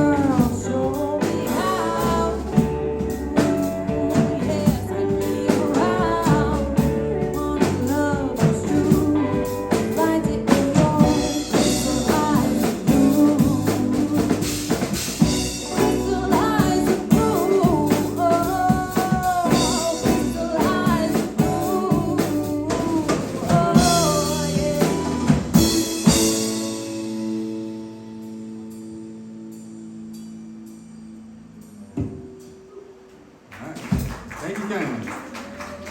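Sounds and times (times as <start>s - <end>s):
person singing lead vocal: 0.0s - 26.8s
live rock band playing: 0.0s - 32.6s.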